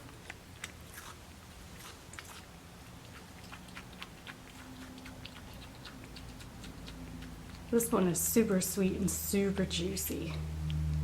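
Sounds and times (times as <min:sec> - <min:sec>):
monkey chewing smacking clicks: 0:02.1 - 0:07.9.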